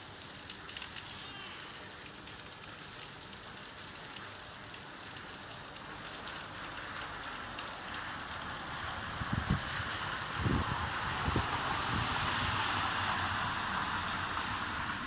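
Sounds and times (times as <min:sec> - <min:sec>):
rain falling: 0:00.0 - 0:15.0.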